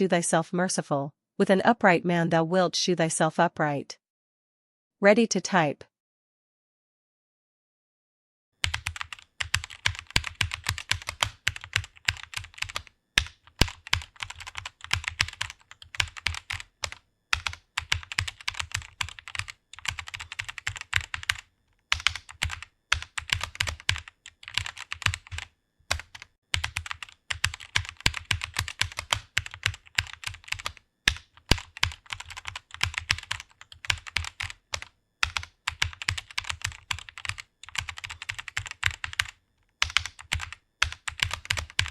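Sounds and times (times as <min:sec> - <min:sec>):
fast typing on keyboard: 0:08.6 - 0:41.9.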